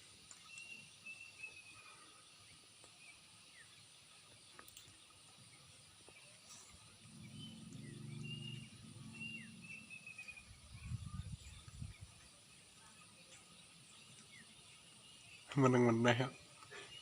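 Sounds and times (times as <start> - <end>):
low droning hum: 6.8 - 12.3.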